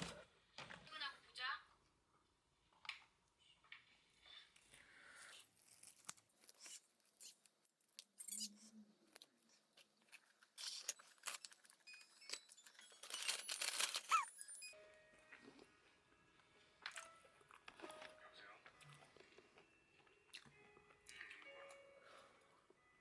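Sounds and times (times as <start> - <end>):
crinkling packaging tear: 5.4 - 8.2, 9.2 - 14.5
packaging rustling: 9.8 - 14.6.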